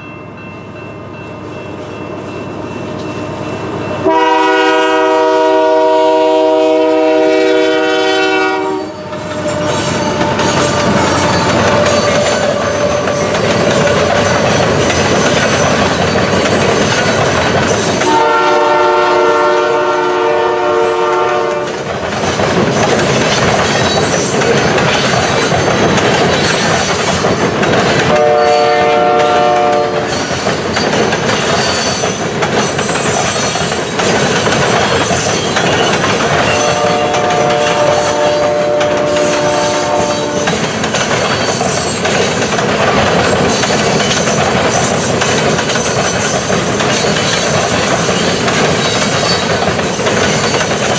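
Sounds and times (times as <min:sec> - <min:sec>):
train wheels on rail: 0:00.0 - 0:50.9
locomotive air horn blasts: 0:04.0 - 0:13.4, 0:18.0 - 0:21.8, 0:28.1 - 0:30.1, 0:36.5 - 0:40.6.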